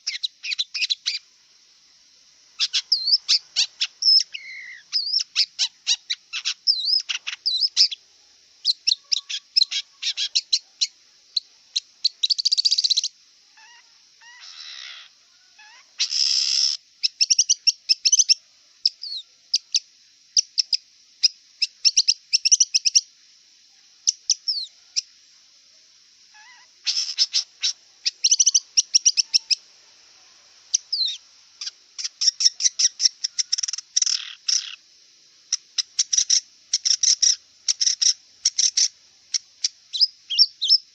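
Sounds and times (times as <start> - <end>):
bird chirping song: 0.0 - 1.3, 2.5 - 8.0, 8.6 - 23.1, 24.0 - 25.1, 26.3 - 29.6, 30.7 - 34.8, 35.5 - 40.9
harsh rasping bird calls: 0.0 - 1.3, 2.5 - 8.0, 8.6 - 11.0, 11.8 - 19.2, 26.3 - 29.6, 30.7 - 34.8, 35.5 - 40.8.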